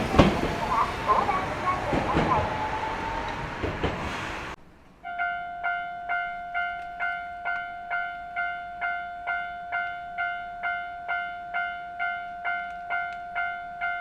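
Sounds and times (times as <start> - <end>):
train rumbling and clattering: 0.0 - 5.0
railroad crossing warning bell: 5.0 - 14.0.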